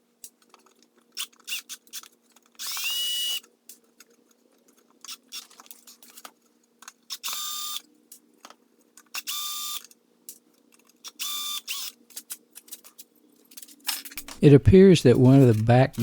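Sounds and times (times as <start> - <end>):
power drill whirring: 1.2 - 3.4, 7.1 - 7.8, 9.2 - 9.8, 11.0 - 12.0.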